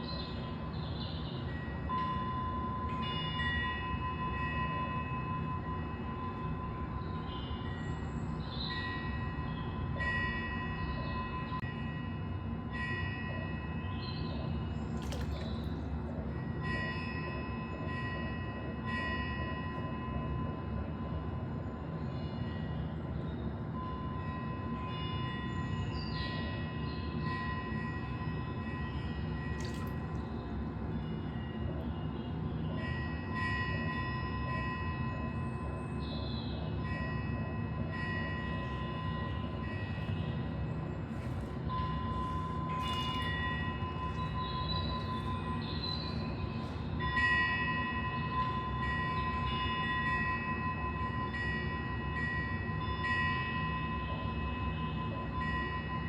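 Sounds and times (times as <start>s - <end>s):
bell-like ringing tone: 36.8s - 40.7s, 41.7s - 56.0s.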